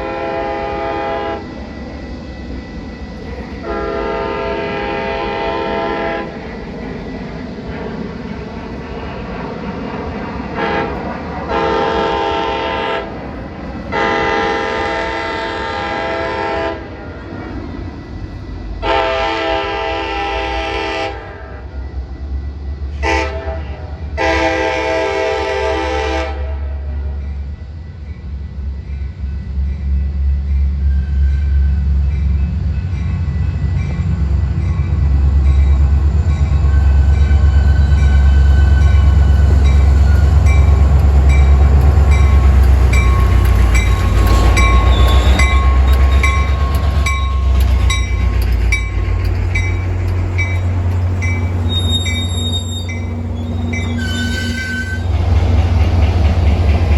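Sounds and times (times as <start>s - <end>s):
train air horn blasts: 0.0s - 1.4s, 3.6s - 6.3s, 10.6s - 13.1s, 13.9s - 16.9s, 18.8s - 21.7s, 23.0s - 27.2s
train passing rumble: 0.0s - 56.9s.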